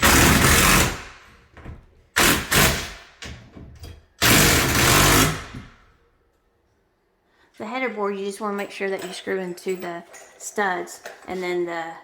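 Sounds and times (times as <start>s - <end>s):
power drill driving screws: 0.0s - 1.1s, 2.2s - 3.0s, 4.2s - 5.6s.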